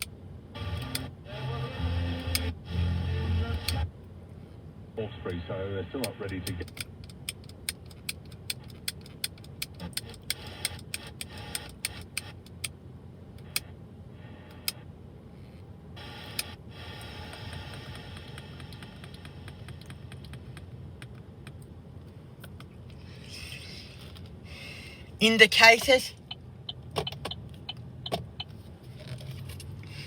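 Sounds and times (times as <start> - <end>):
turn signal ticking: 17.3 - 21.7, 25.6 - 28.6.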